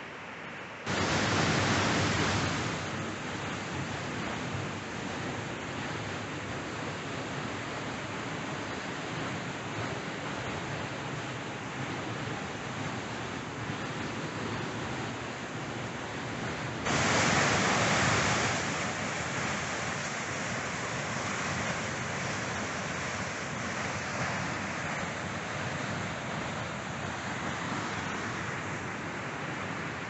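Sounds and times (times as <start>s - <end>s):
rushing water of cascades: 0.0s - 30.0s.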